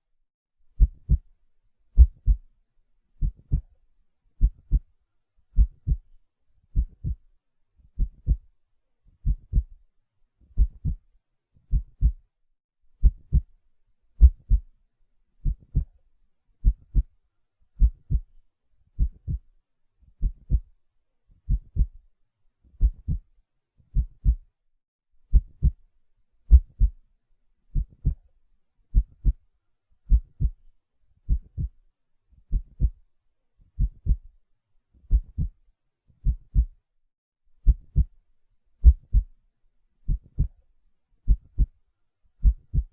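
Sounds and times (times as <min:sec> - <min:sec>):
heartbeat thumping: 0:00.8 - 0:01.2, 0:02.0 - 0:02.4, 0:03.2 - 0:03.7, 0:04.4 - 0:04.8, 0:05.6 - 0:06.0, 0:06.8 - 0:07.2, 0:08.0 - 0:08.4, 0:09.2 - 0:09.7, 0:10.6 - 0:11.0, 0:11.7 - 0:12.2, 0:14.2 - 0:14.6, 0:15.4 - 0:15.8, 0:16.6 - 0:17.0, 0:17.8 - 0:18.3, 0:19.0 - 0:19.4, 0:20.2 - 0:20.6, 0:21.5 - 0:21.9, 0:22.8 - 0:23.2, 0:24.0 - 0:24.4, 0:25.3 - 0:25.8, 0:26.5 - 0:27.0, 0:27.8 - 0:28.2, 0:30.1 - 0:30.6, 0:31.3 - 0:31.7, 0:32.5 - 0:33.0, 0:33.8 - 0:34.3, 0:35.1 - 0:35.5, 0:36.2 - 0:36.7, 0:37.6 - 0:38.1, 0:38.8 - 0:39.3, 0:40.1 - 0:40.5, 0:41.3 - 0:41.7, 0:42.4 - 0:42.9.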